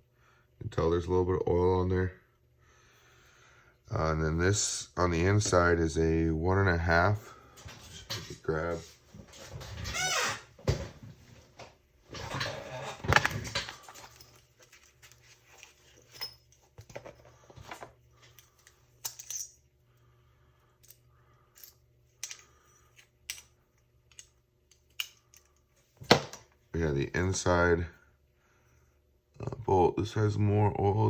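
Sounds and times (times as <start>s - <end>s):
metal parts handling noise: 12.1s - 19.6s, 20.8s - 26.4s.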